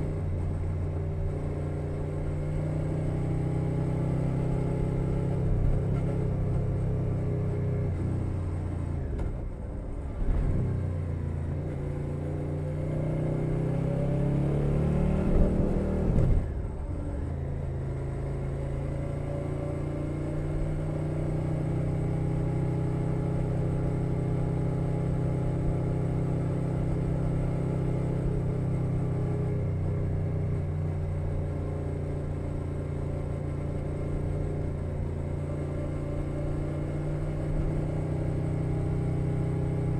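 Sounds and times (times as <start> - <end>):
motorcycle engine revving: 10.2 - 16.5.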